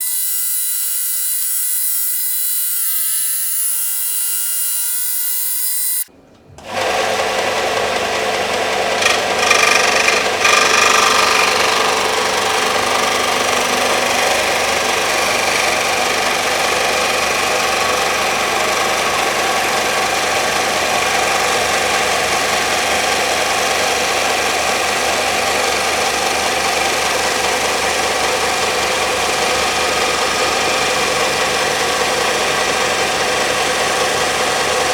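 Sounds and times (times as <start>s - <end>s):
belt sander grinding: 0.0s - 6.1s, 6.7s - 19.7s.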